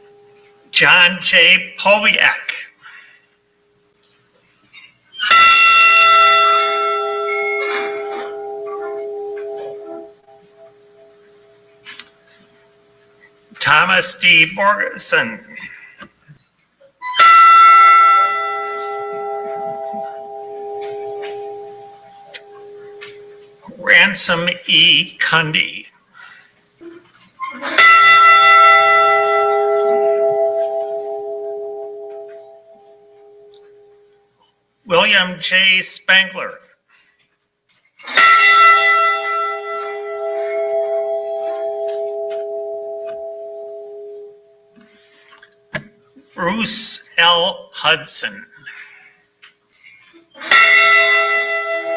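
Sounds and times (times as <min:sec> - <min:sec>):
ship's bell ringing: 0:00.0 - 0:01.6, 0:05.2 - 0:11.9, 0:17.0 - 0:24.6, 0:27.4 - 0:34.2, 0:38.1 - 0:45.7, 0:50.5 - 0:51.9.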